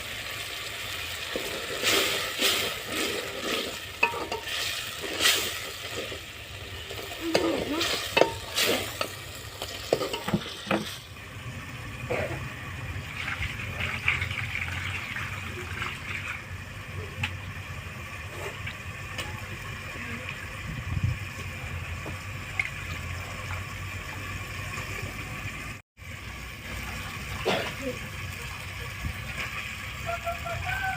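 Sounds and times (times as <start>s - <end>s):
food sizzling in a pan: 0.0s - 20.2s
spoon scraping a pan: 1.3s - 11.0s.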